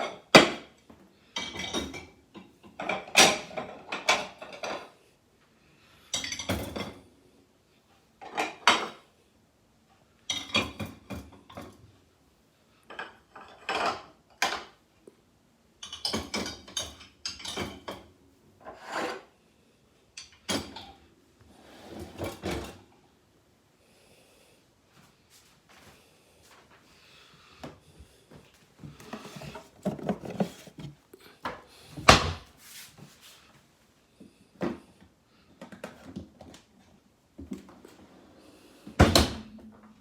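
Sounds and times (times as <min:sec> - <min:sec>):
dishes clattering in dishwasher racks: 0:01.4 - 0:04.9, 0:15.8 - 0:18.1, 0:20.2 - 0:21.0, 0:32.0 - 0:32.4.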